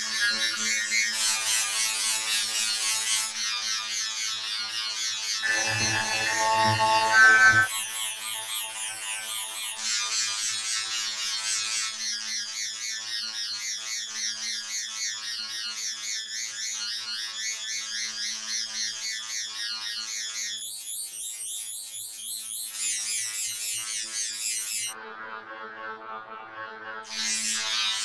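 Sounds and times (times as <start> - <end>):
buzzy electronic warble: 5.4 - 9.2.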